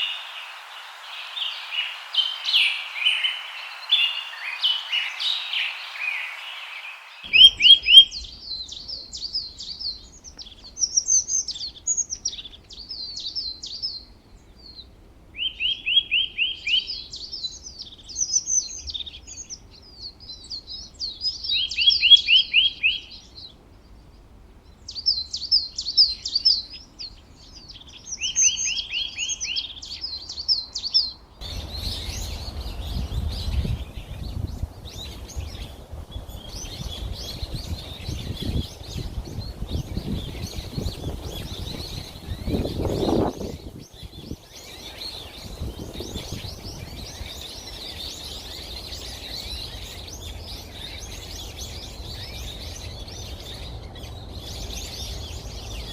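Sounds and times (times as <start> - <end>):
low rushing noise: 0.0 - 8.6, 31.4 - 44.2
songbird singing: 0.0 - 55.9.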